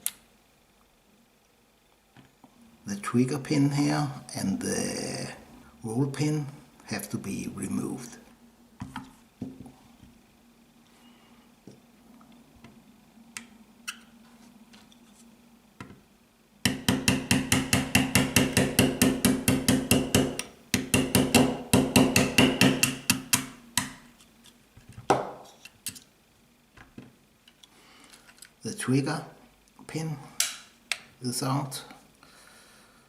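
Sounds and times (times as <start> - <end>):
hammer tapping metal punch: 16.7 - 24.0.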